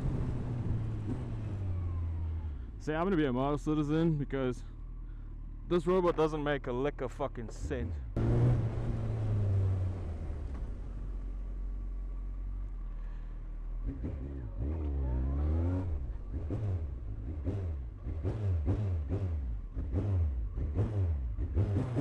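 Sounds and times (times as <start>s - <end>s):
motorcycle engine revving: 7.6s - 11.0s, 13.7s - 22.0s.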